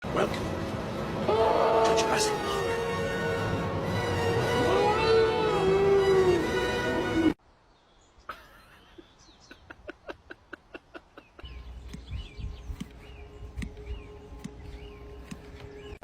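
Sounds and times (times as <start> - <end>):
bird chirps: 7.7 - 9.8, 11.2 - 16.0
sharp clicks or taps: 11.9 - 12.2, 13.6 - 13.8.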